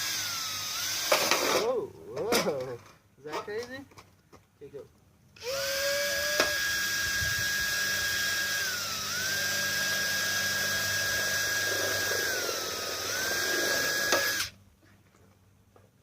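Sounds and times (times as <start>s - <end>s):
power drill whining: 0.0s - 1.6s, 5.4s - 14.6s.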